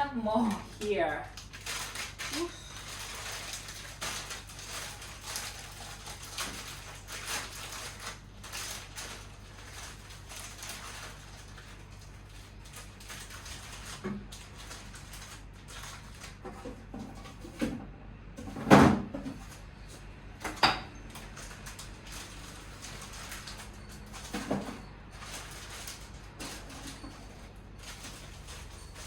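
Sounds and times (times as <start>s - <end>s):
plastic packaging rustling: 0.2s - 17.6s, 19.1s - 20.0s, 21.0s - 29.0s.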